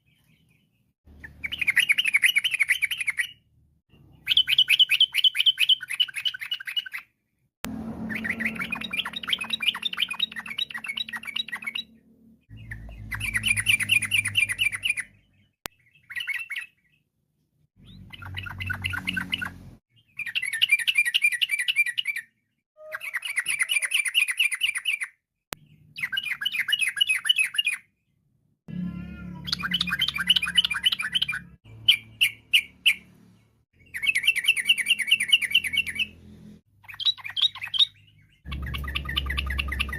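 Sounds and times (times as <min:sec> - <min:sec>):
bird singing trilled phrases: 0:00.0 - 0:07.2, 0:08.0 - 0:17.1, 0:17.8 - 0:28.0, 0:29.2 - 0:36.2, 0:36.8 - 0:39.9.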